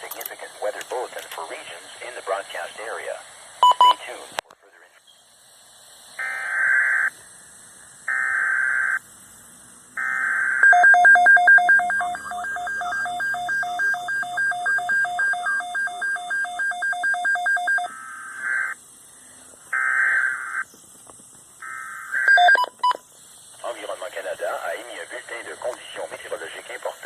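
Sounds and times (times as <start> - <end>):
alternating high and low beeps: 3.6 - 4.1, 10.0 - 18.8, 21.6 - 23.1
buzzy digital data burst: 6.0 - 19.0.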